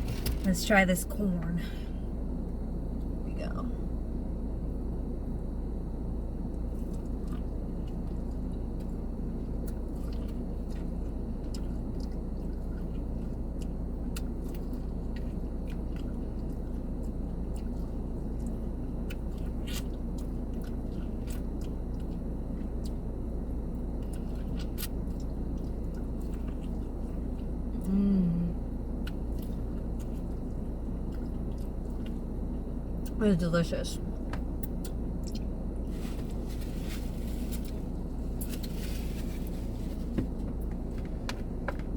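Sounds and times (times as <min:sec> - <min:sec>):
car cabin rumble: 0:00.0 - 0:01.8, 0:35.9 - 0:41.9
chewing and crunching corn: 0:06.5 - 0:27.9, 0:28.9 - 0:33.2, 0:34.1 - 0:41.9.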